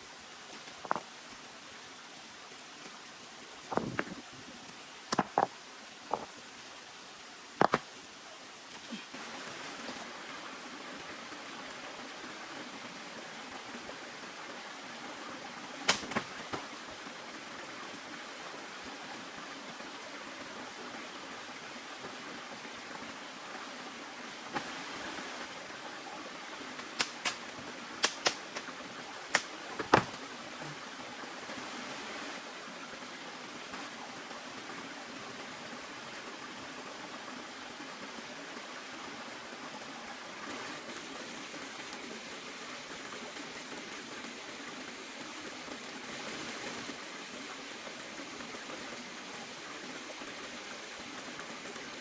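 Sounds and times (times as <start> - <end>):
running water rushing: 0.0 - 52.0.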